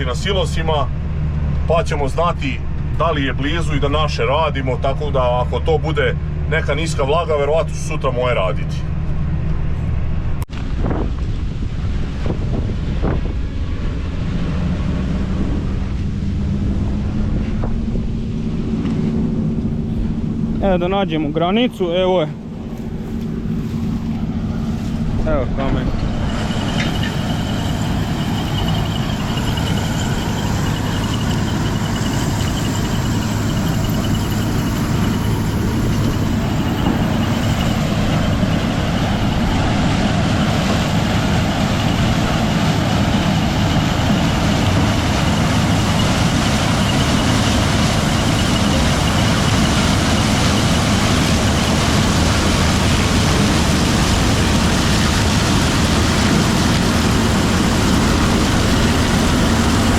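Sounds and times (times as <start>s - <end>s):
diesel farm machinery engine drone: 0.0s - 59.9s
faint high whine: 19.6s - 54.6s.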